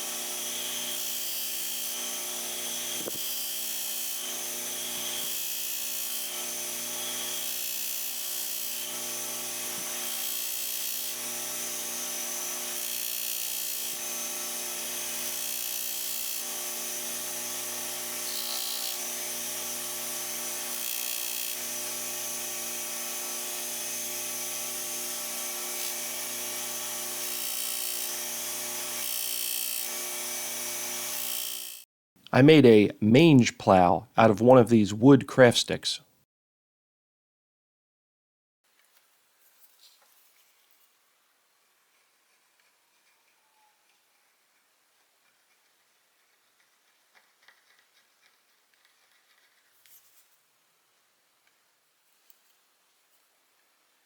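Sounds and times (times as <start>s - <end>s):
power tool motor grinding: 0.0s - 31.8s.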